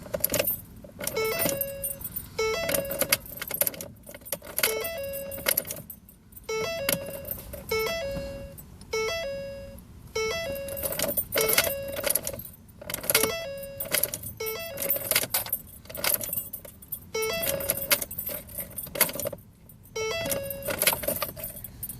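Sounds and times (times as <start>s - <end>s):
keys jangling: 0.0s - 7.8s, 10.5s - 21.9s.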